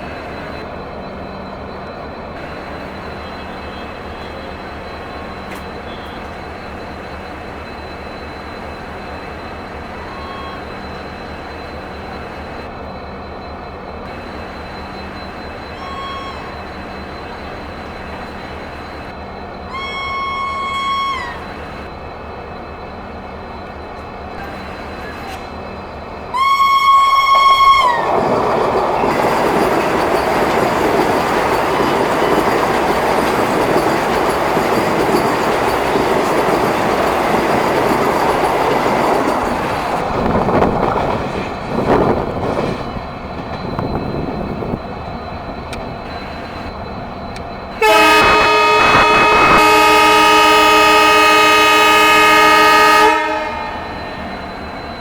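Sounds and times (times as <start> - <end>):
train rushing and rattling past: 0.0 - 55.0
shrill train horn: 2.4 - 7.2, 9.4 - 11.4, 14.1 - 21.9, 26.3 - 39.3, 47.7 - 55.0.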